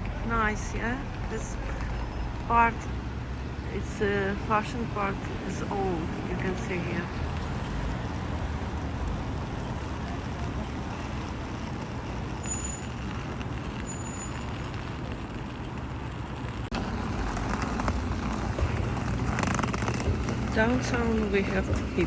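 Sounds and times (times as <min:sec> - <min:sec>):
traffic engines running: 0:00.0 - 0:22.0
tyre and road noise: 0:00.0 - 0:22.0
brief high squeaks: 0:12.4 - 0:14.6.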